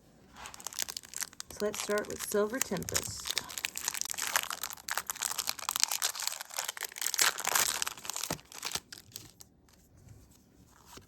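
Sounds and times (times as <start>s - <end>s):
foil wrapper tearing and crinkling: 0.4s - 9.5s.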